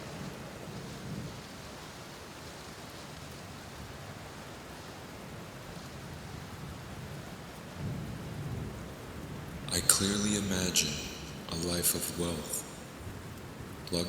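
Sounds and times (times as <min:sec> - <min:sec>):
steady rain: 0:00.0 - 0:14.0
low rumble of thunder: 0:07.8 - 0:09.7.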